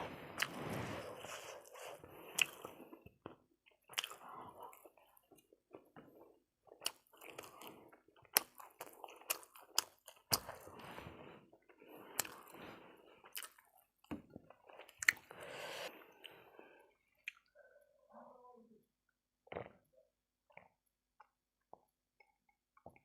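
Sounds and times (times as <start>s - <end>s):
wet chewing: 1.2s - 16.4s.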